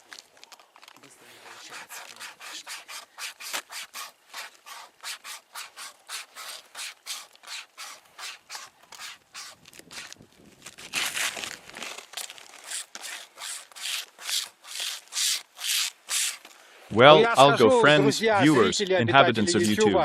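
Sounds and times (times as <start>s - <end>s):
wire saw rasping through wood: 1.4s - 10.2s, 12.5s - 16.5s.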